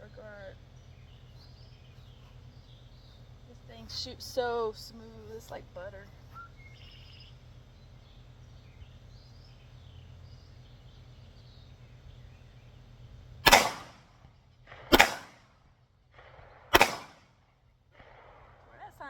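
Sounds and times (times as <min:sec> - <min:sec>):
faint outdoor ambience: 0:00.0 - 0:19.0
gunshots with echo: 0:13.4 - 0:14.1, 0:14.7 - 0:15.5, 0:16.1 - 0:17.3.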